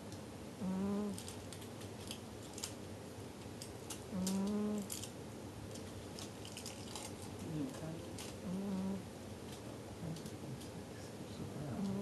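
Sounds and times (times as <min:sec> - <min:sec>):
cat snoring: 0:00.6 - 0:01.2, 0:04.1 - 0:04.9, 0:08.4 - 0:09.0, 0:11.7 - 0:12.0.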